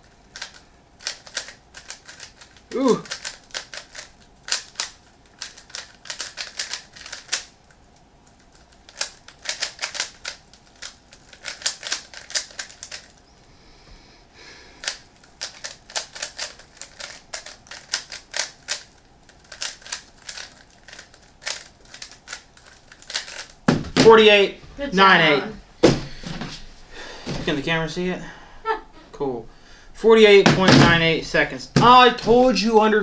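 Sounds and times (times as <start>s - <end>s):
puzzle cube clicking: 0.3s - 7.5s, 8.3s - 13.2s, 14.8s - 24.2s.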